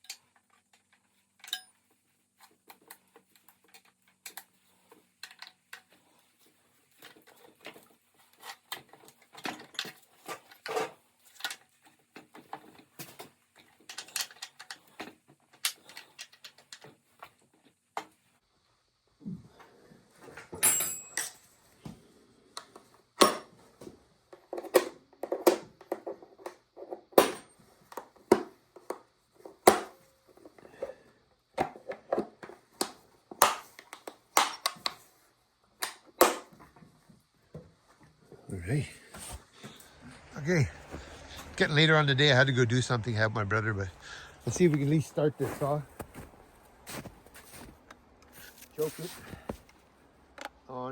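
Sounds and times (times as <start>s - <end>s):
metal parts and tools clinking: 0.0s - 2.1s, 2.7s - 17.0s, 20.4s - 21.5s.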